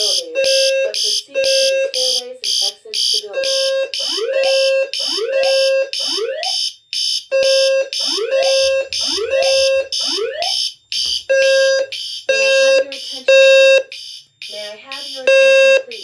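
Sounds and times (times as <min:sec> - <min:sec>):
fire alarm low blasts: 0:00.0 - 0:16.0.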